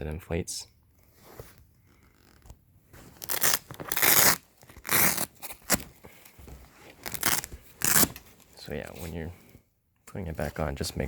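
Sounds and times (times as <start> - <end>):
velcro ripping apart: 1.9 - 2.5, 3.1 - 5.9, 7.0 - 8.2.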